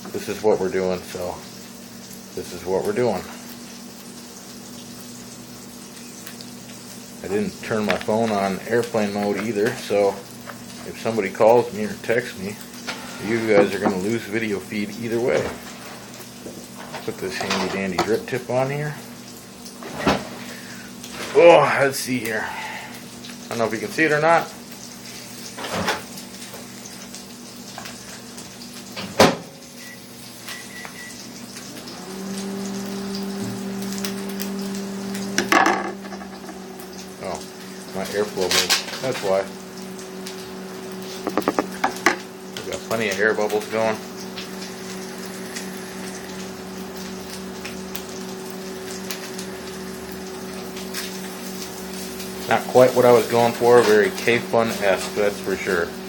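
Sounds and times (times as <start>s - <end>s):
vape coil sizzling and crackling: 30.9s - 56.0s.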